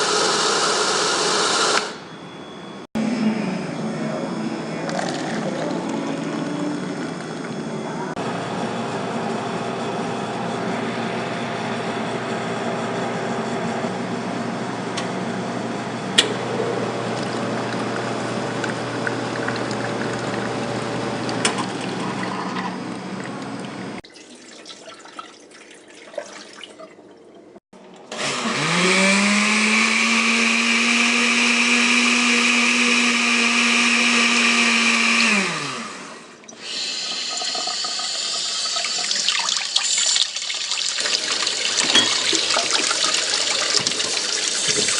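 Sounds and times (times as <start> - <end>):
cafe background noise: 3.5 - 8.2
electric countertop motor spinning: 28.1 - 40.2.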